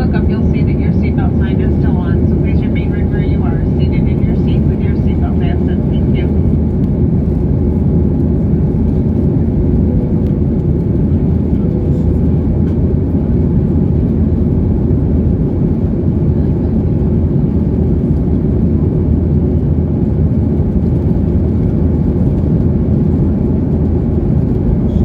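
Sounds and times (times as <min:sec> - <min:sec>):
jet engines roaring: 0:00.0 - 0:19.0.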